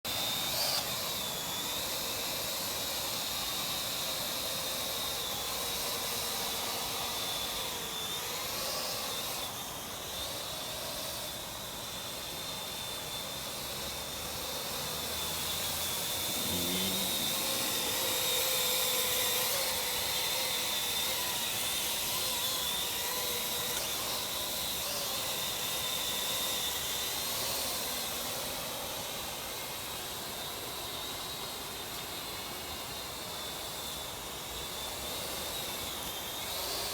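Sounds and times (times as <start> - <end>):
drone motors whining: 0.1 - 36.9
propeller hiss: 16.0 - 18.9.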